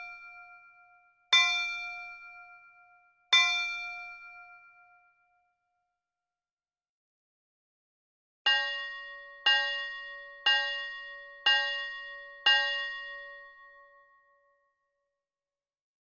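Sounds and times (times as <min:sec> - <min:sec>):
clock striking bell chime: 0:08.5 - 0:13.7.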